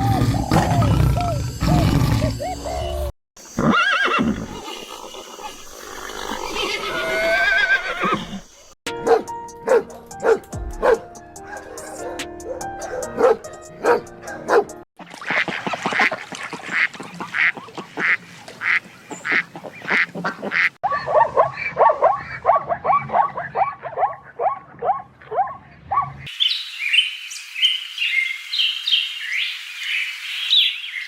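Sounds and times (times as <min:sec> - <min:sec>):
ducks quacking: 0:14.3 - 0:22.5.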